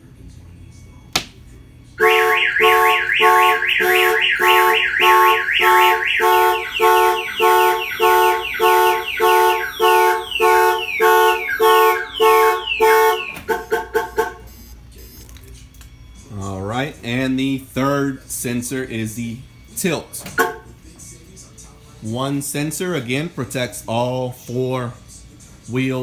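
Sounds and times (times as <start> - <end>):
car alarm siren: 2.0 - 14.7, 19.6 - 20.7
car alarm chirps: 2.0 - 15.2, 19.5 - 20.7.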